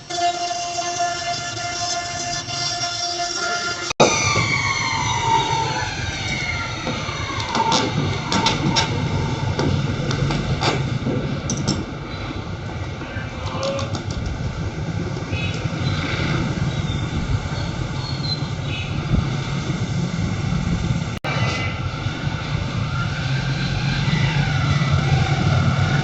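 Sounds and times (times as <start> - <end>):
high machine whine: 0.0 - 26.0.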